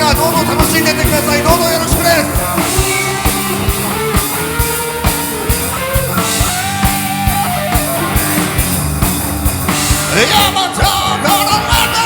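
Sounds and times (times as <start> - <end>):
held lead note: 0.0 - 8.7
distorted electric guitar chords: 0.0 - 12.0
drum kit beat: 0.0 - 12.0
keyboards: 0.0 - 12.0.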